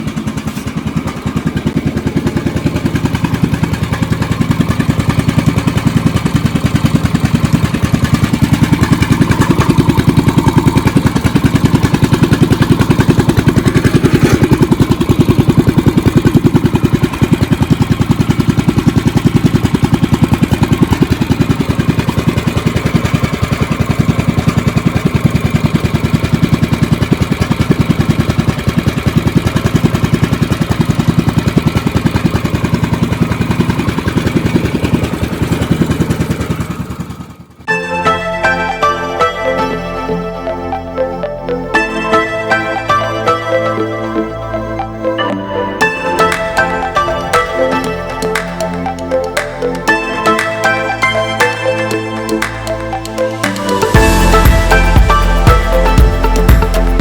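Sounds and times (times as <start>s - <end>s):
small engine running: 0.0s - 57.0s.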